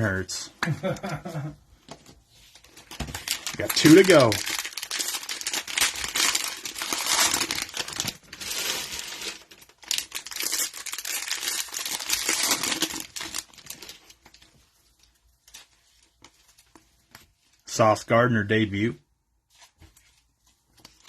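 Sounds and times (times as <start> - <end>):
cellophane wrapper crinkling and tearing: 2.5 - 17.3, 20.7 - 21.0.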